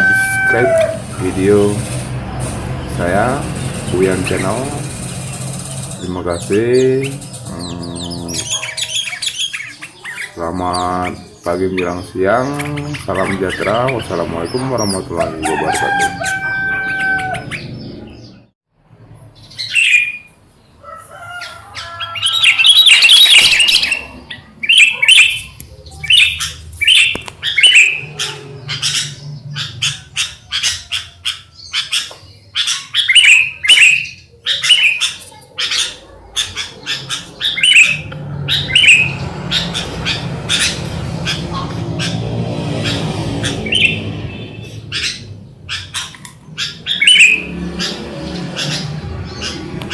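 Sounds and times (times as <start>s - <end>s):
low hum: 0.0s - 8.5s
bulbuls chirping: 0.0s - 18.6s, 19.2s - 49.9s.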